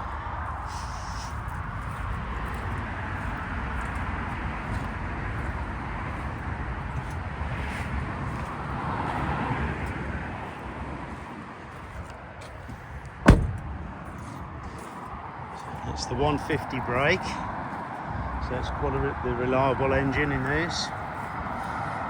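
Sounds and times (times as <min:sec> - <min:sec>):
background rumble: 0:11.8 - 0:14.8
van door slamming: 0:12.6 - 0:14.0.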